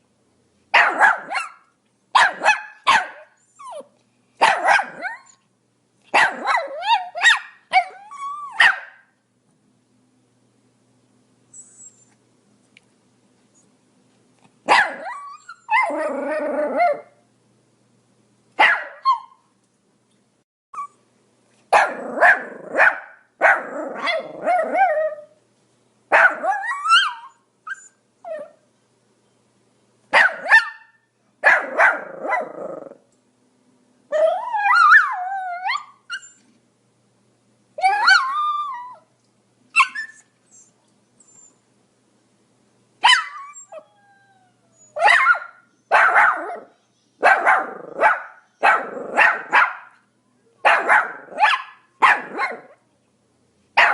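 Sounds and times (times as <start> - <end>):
dog barking and yapping: 0.7 - 5.4, 6.1 - 9.1, 14.7 - 17.1, 18.6 - 19.4, 21.7 - 25.3, 26.1 - 27.3, 30.1 - 33.0, 43.0 - 43.6, 45.0 - 50.0, 50.6 - 52.8
dog whining yowl: 2.2 - 5.4, 6.2 - 8.9, 11.5 - 12.2, 14.7 - 17.2, 18.8 - 19.5, 21.8 - 25.4, 26.2 - 28.6, 34.1 - 36.5, 37.8 - 39.1, 39.7 - 41.6, 43.0 - 49.6.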